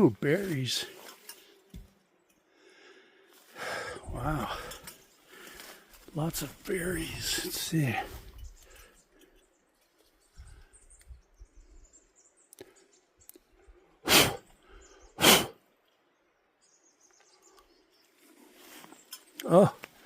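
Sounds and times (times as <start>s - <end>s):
forest ambience: 0.0s - 20.0s
faint bird chirps: 6.7s - 19.8s.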